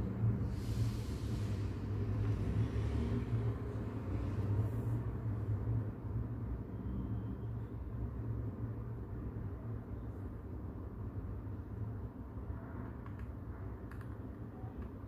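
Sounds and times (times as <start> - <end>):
brown noise rumbling hiss: 0.0 - 5.0.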